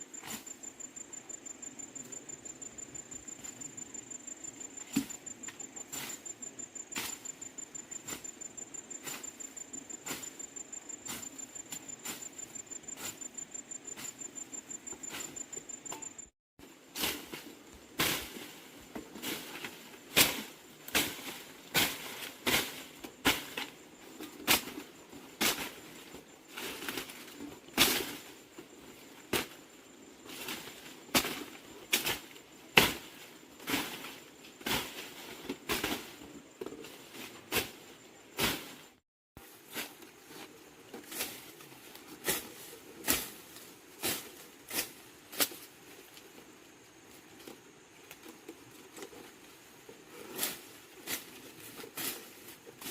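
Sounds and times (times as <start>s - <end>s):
scraping brushing strokes: 4.6s - 16.0s, 30.2s - 46.4s.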